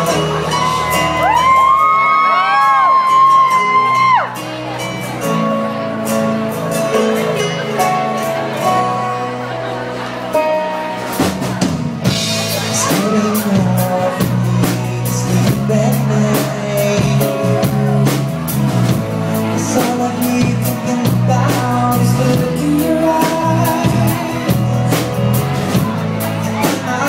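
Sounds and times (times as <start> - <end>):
live band playing pop ballad: 0.0 - 27.0
drum kit hits: 11.0 - 19.2.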